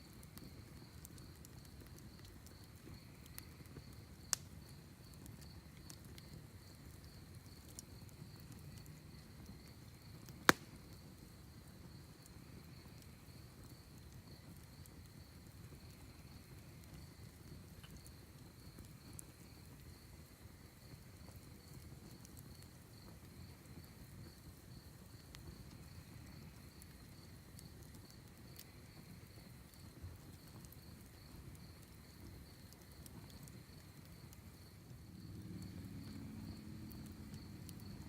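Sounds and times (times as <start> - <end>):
wood fire crackling: 0.0 - 38.0
crickets chirping: 25.8 - 38.0.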